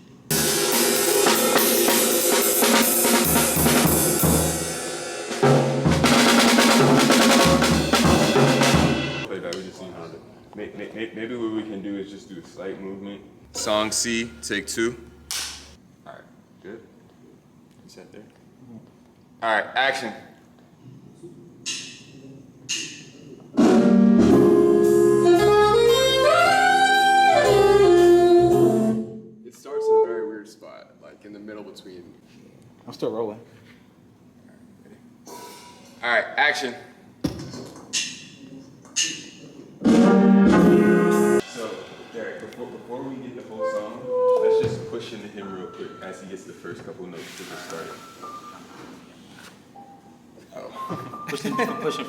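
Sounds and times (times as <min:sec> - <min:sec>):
jazz band playing: 0:00.3 - 0:09.3, 0:13.5 - 0:15.8, 0:23.6 - 0:29.2, 0:39.8 - 0:42.5, 0:43.4 - 0:45.4
sustained chord: 0:13.5 - 0:15.3
jazz saxophone melody: 0:23.6 - 0:30.3, 0:39.8 - 0:41.4, 0:43.6 - 0:45.0.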